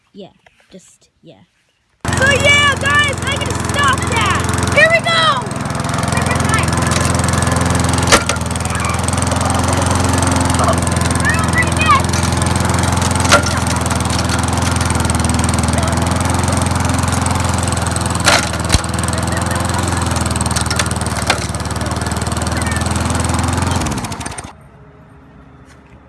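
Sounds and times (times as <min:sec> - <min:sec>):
lawnmower engine running: 0:02.0 - 0:24.6.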